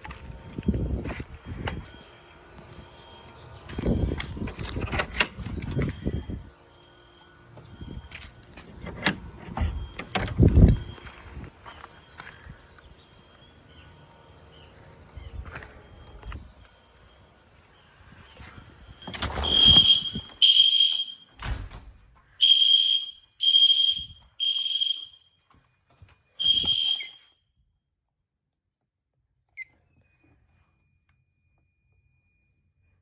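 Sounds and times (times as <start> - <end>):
fire alarm beeps: 0.0 - 21.4, 22.3 - 25.5, 26.3 - 27.4.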